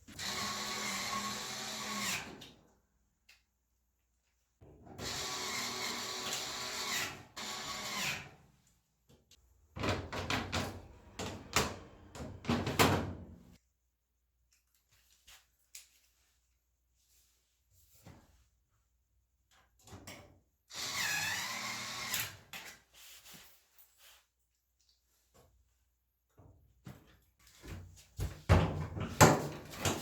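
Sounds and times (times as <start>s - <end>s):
power drill running: 0.1s - 2.3s, 5.0s - 8.3s, 20.7s - 22.3s
knocks and clatter of parts: 9.8s - 13.3s, 26.4s - 30.0s.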